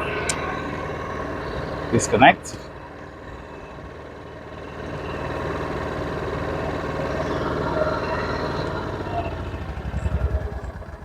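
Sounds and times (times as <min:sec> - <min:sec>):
generator engine running: 0:00.0 - 0:11.0.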